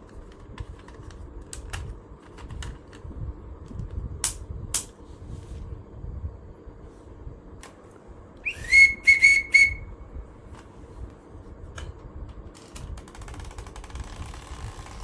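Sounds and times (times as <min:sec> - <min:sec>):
high whistled chirps: 0:08.4 - 0:10.0.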